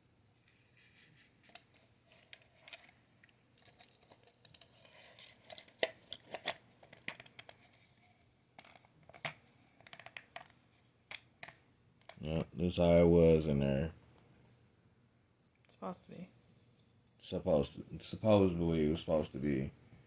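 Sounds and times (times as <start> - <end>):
plastic packaging rustling: 0.6 - 10.6.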